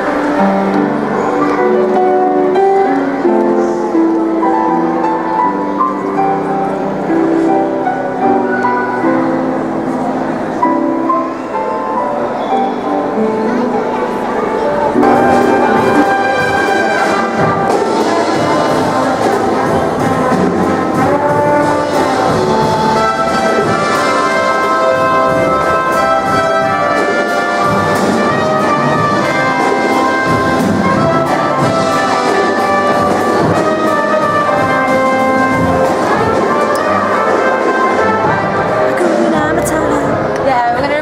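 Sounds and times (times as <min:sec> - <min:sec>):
orchestral brass sustained notes: 0:00.0 - 0:41.0.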